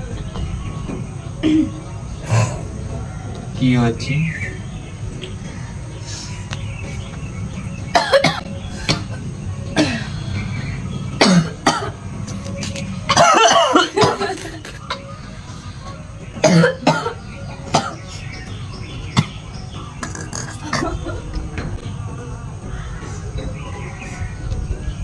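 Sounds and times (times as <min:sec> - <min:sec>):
person coughing: 0:13.1 - 0:14.4.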